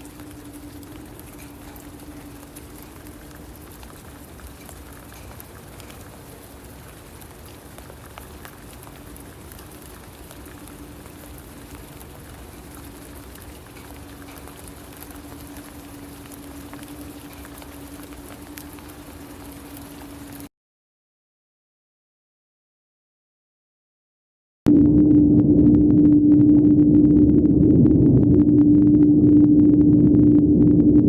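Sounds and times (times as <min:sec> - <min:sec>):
low metallic hum: 0:00.0 - 0:20.4, 0:24.7 - 0:31.0
rain patter and hiss: 0:00.0 - 0:20.5
raindrop clicks: 0:00.0 - 0:20.5.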